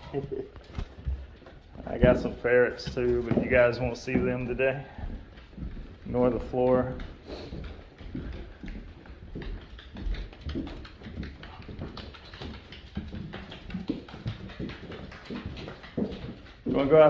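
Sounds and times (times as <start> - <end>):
footsteps on hard floor: 0.0 - 17.0.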